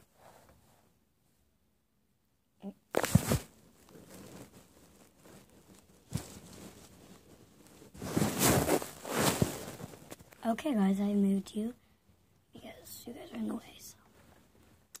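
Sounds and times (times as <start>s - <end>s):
fabric shuffling: 2.9s - 10.4s
stuffed animals rustling on microphone: 2.9s - 10.4s.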